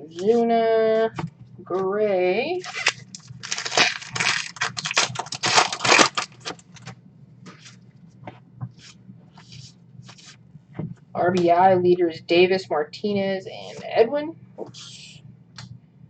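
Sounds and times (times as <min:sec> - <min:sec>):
rustling of trading cards: 0:02.6 - 0:06.9.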